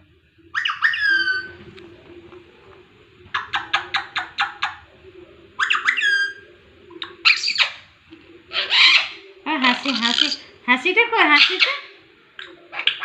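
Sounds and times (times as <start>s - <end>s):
parrot chirping and squawking: 0.5s - 1.6s, 3.3s - 4.9s, 5.6s - 7.9s, 8.5s - 10.5s, 11.2s - 13.0s.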